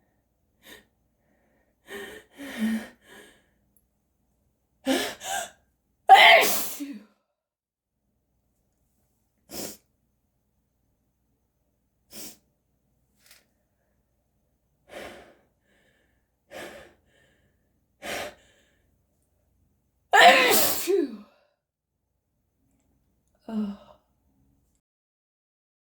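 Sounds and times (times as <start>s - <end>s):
person sneezing: 6.1s - 7.0s, 20.2s - 21.2s.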